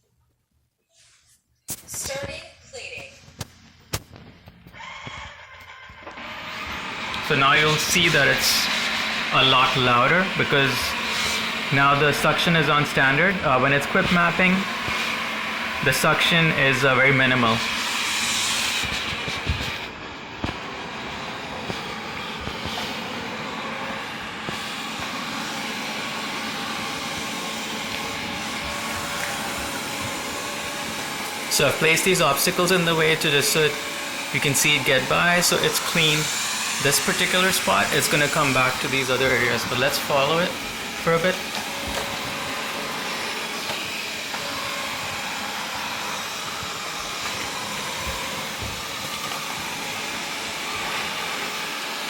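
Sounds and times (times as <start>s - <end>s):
robot vacuum running: 4.8s - 52.0s.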